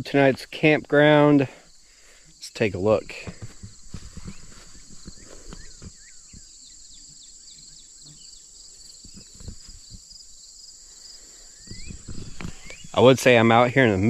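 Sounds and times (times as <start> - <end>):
crickets and insects trilling: 0.0 - 14.0
soft low thumps: 3.0 - 6.5.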